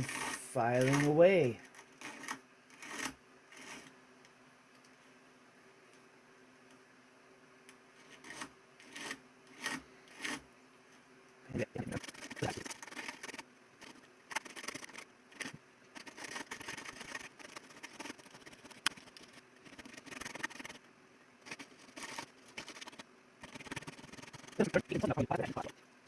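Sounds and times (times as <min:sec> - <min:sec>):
hand file scraping metal chain: 0:00.0 - 0:03.9, 0:08.0 - 0:10.4.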